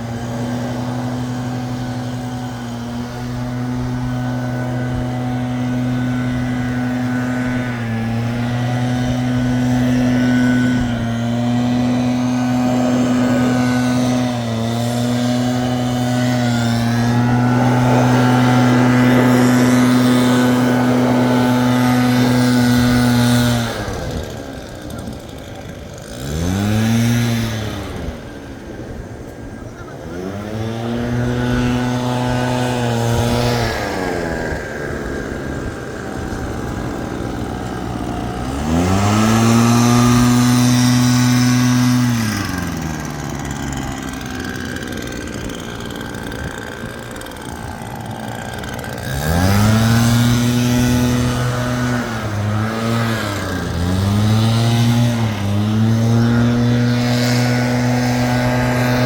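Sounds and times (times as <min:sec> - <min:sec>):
leaf blower engines revving: 0:00.0 - 0:59.0
steady rushing sound: 0:01.3 - 0:24.9.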